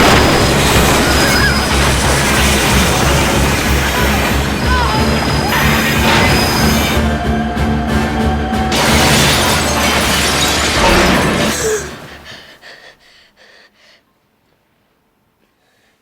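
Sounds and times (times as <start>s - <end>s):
orchestral score: 0.0s - 12.3s
debris clinking: 0.0s - 12.4s
train crash crashing and shattering: 0.0s - 12.5s.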